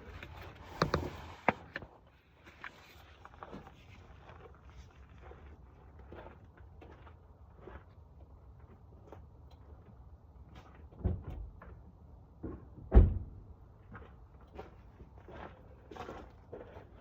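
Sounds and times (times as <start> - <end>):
clicks and knocks handling car parts: 0.0 - 3.7.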